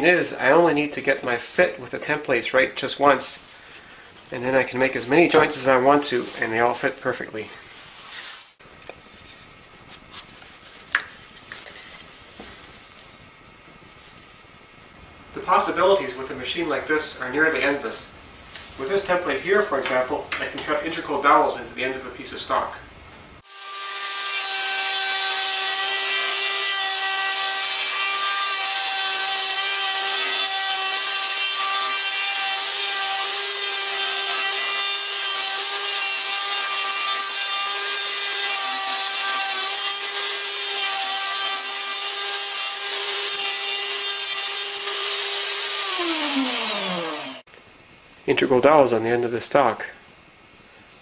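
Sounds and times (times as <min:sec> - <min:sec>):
wood router whining: 0:23.4 - 0:47.5.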